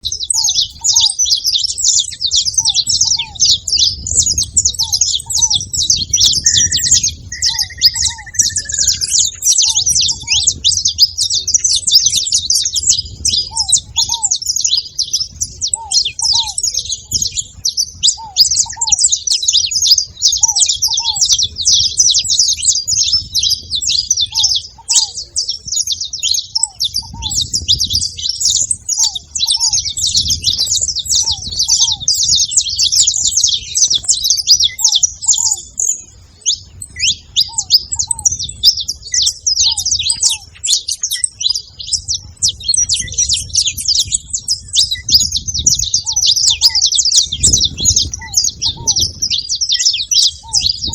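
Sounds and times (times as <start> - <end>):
finches chirping: 0.0 - 50.9
lower two-note bird call: 6.4 - 9.2.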